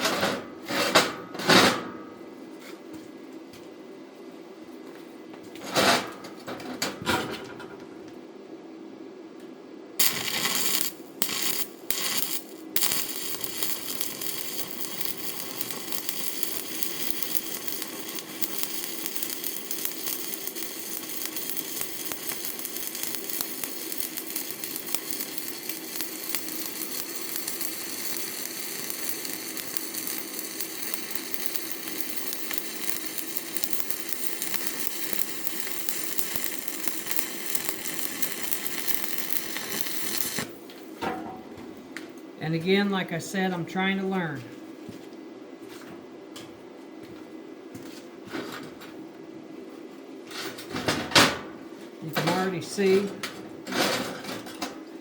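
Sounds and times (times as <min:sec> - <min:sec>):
welding arc crackling: 0:10.0 - 0:40.9, 0:52.0 - 0:53.2.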